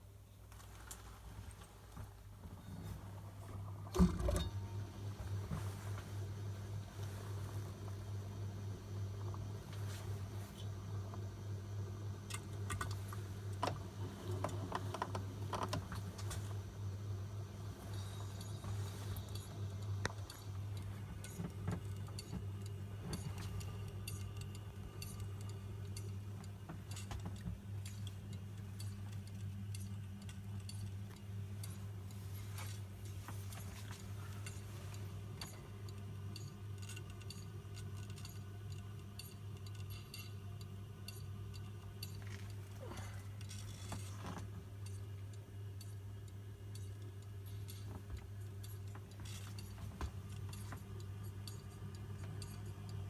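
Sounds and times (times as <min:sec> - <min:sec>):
lathe electrical hum: 0:00.0 - 0:53.0
small clicks and ticks: 0:17.8 - 0:53.0.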